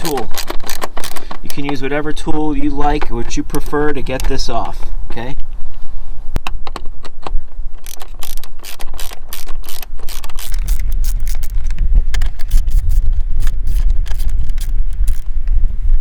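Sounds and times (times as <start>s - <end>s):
ratcheting socket wrench clicking: 7.8s - 15.4s.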